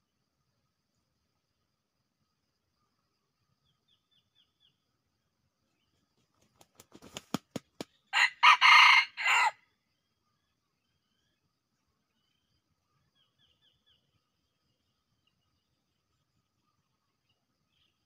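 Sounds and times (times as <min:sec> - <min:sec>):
rooster wings clapping: 0:06.4 - 0:08.0
rooster crowing: 0:08.1 - 0:09.6.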